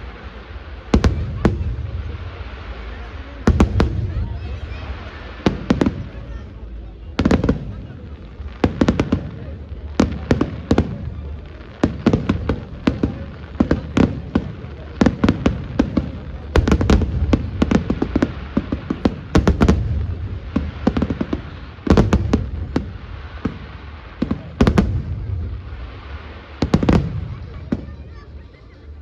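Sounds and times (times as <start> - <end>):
fireworks bangs and pops: 0.0 - 29.0.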